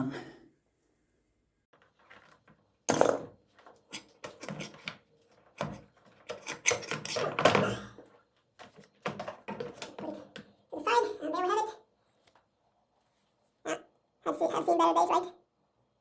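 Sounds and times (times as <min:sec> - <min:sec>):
tools knocking and clattering: 0:02.9 - 0:07.7, 0:08.6 - 0:10.6.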